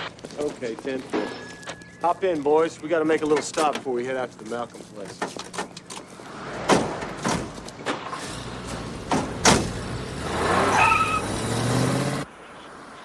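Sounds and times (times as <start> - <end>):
car doors shutting: 5.3 - 9.9.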